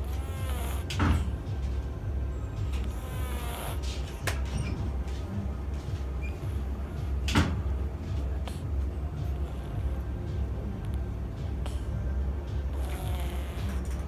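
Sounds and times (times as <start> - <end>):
cat snoring: 0.0 - 1.4, 2.6 - 4.2, 8.1 - 14.0.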